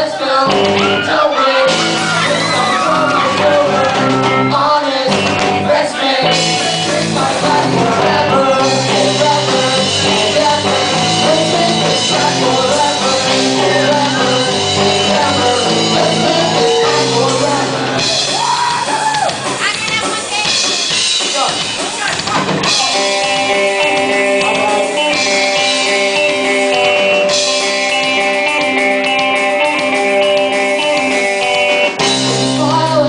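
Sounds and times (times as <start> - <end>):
person singing: 0.0 - 19.0, 32.2 - 33.0
live rock band playing chords: 0.0 - 33.0.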